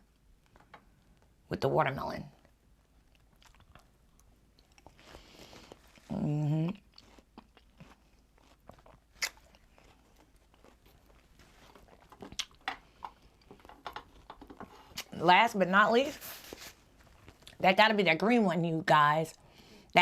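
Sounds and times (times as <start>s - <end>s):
person chewing watermelon: 2.4s - 15.1s.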